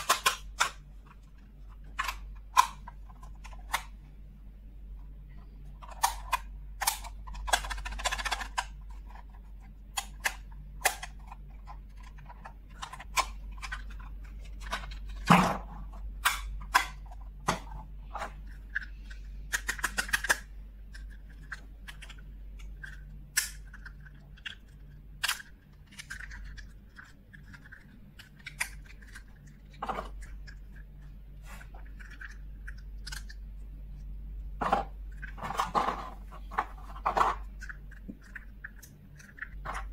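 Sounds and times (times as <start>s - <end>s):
plastic toy pieces clicking: 0.0s - 0.8s, 5.7s - 15.3s, 16.2s - 31.0s, 31.8s - 33.4s, 35.1s - 39.9s.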